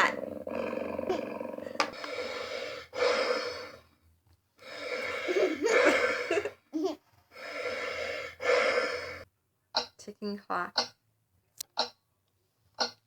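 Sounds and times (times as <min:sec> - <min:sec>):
recorded cat purr from speaker: 0:00.0 - 0:03.6.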